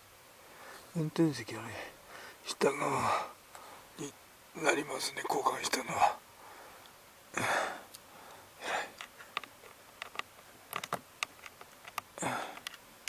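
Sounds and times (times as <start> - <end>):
light sharp clicks and taps: 7.9 - 12.8.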